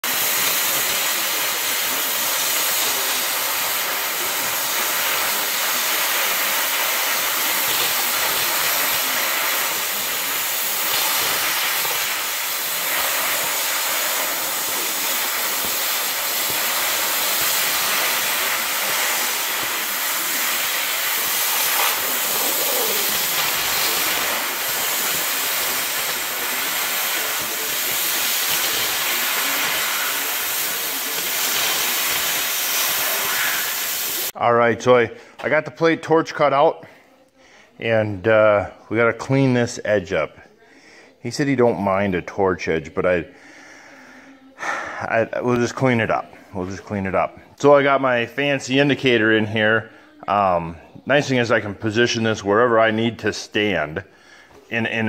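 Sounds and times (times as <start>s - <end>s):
cutting torch hissing: 0.0s - 34.4s.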